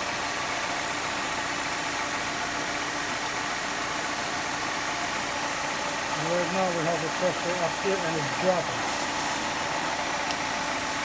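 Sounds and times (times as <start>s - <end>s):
car engine idling: 0.0s - 11.0s
constant hiss: 5.5s - 10.7s.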